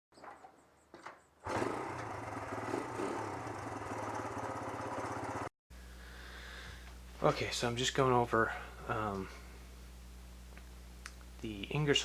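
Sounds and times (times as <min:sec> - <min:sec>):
engine running with fast pulse: 0:01.4 - 0:05.5.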